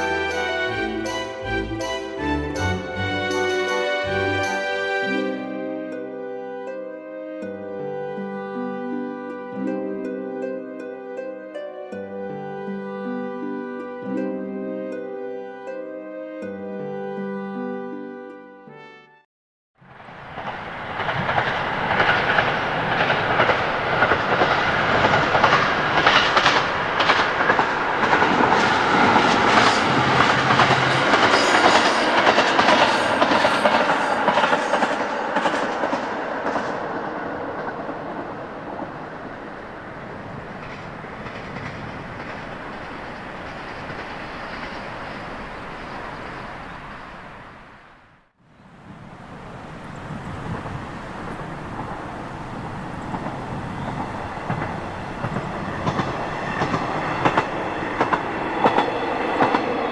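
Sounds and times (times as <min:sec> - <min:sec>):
diesel railcar passing: 0:00.0 - 0:06.7, 0:19.8 - 0:59.9
wheels clicking over rail joints: 0:19.9 - 0:47.0, 0:49.3 - 0:59.9.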